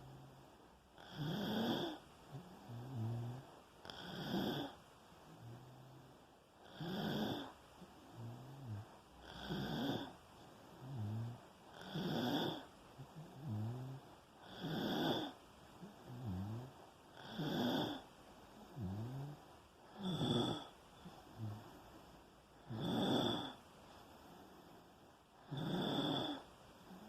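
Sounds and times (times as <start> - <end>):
person snoring: 1.0 - 4.8, 6.6 - 10.2, 10.8 - 18.0, 18.6 - 21.8, 22.6 - 23.6, 25.4 - 27.0.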